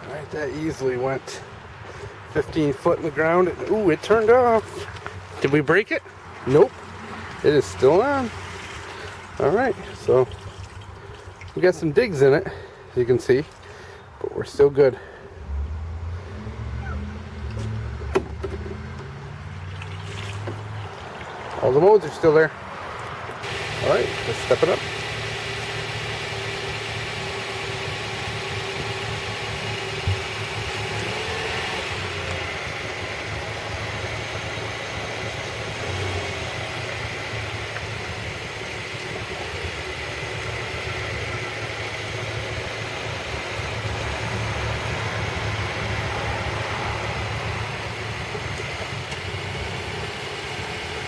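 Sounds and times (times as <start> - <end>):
air blower motor drone: 23.4 - 51.0.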